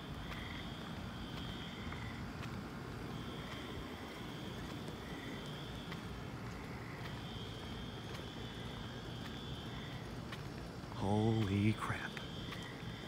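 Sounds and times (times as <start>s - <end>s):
low rumbling background noise: 0.0s - 13.0s
fire alarm high steady tone: 3.1s - 6.3s, 7.0s - 10.0s.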